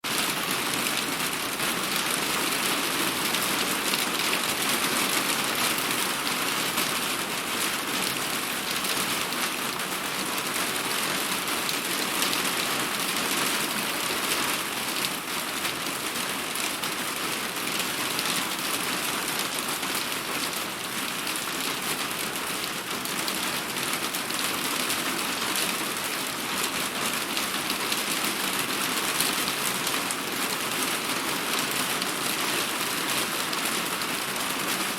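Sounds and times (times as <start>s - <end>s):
heavy rain falling: 0.0s - 34.9s.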